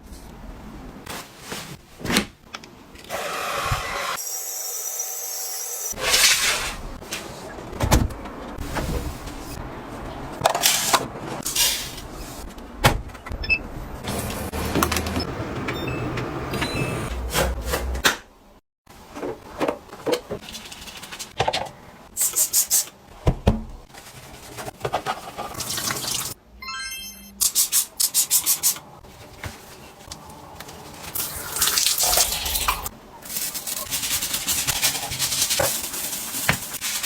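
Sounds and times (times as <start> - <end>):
rubbing and rustling: 33.2 - 37.0.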